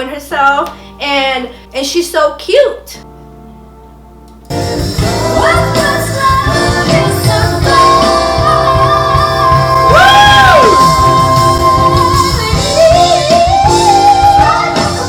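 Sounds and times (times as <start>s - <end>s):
band accompaniment: 4.5s - 15.0s.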